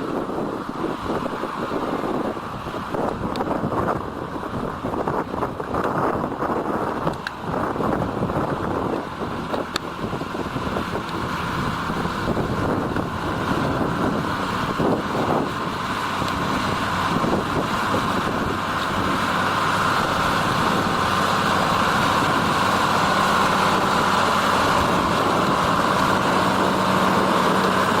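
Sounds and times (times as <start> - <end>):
tractor diesel engine running: 0.0 - 28.0.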